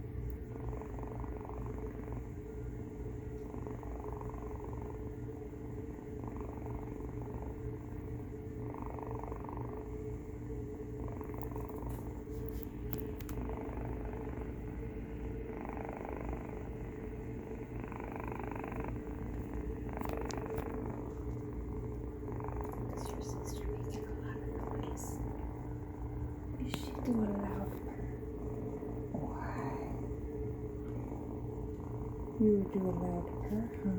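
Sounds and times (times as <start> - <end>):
cat snore-purring: 0.0 - 33.9.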